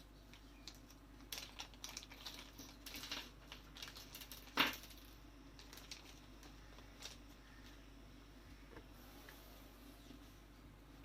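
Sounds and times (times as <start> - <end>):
plastic bag handling: 0.4 - 7.8.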